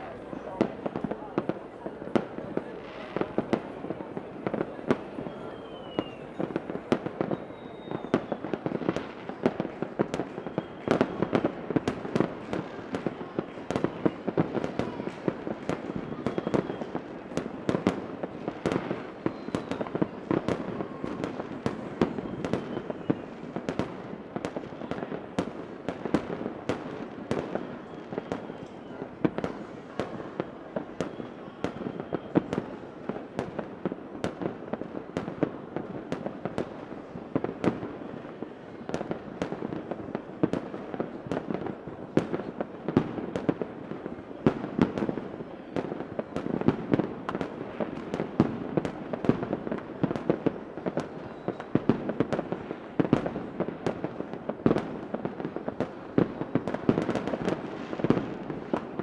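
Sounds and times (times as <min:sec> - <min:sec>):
fireworks bangs and crackles: 0:00.0 - 0:59.0
fireworks rumble: 0:00.0 - 0:59.0
faint firework whistles: 0:02.9 - 0:33.6, 0:50.5 - 0:53.2.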